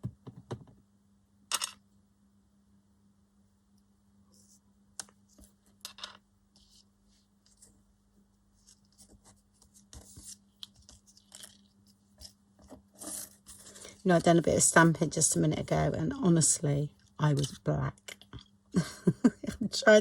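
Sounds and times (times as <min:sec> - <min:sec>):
paper and fabric rustling: 0:08.5 - 0:14.4.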